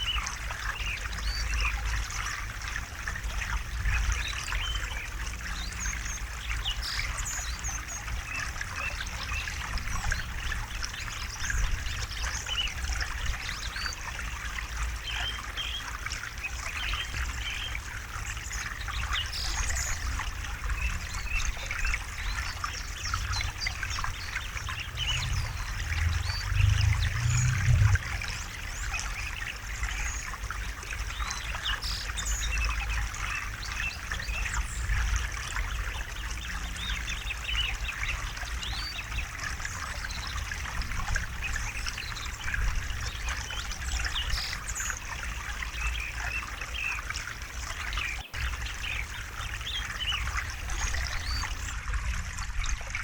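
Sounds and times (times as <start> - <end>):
low rumble of flowing water: 0.0 - 53.0
river babbling over stones: 0.0 - 53.0
birds chirping: 20.7 - 30.3.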